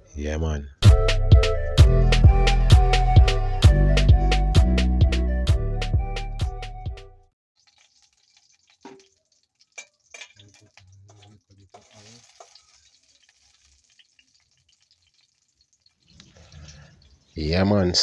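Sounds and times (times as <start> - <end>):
pot and utensils clinking: 7.6 - 13.8
oil sizzling in a pot: 7.6 - 17.3.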